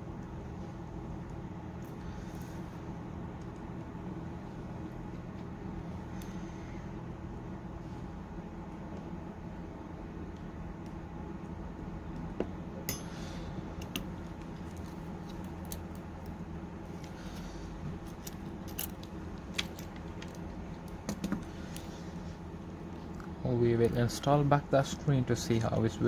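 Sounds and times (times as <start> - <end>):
steady low background hum: 0.0 - 26.0
metal tools clicking and tapping: 12.9 - 13.2.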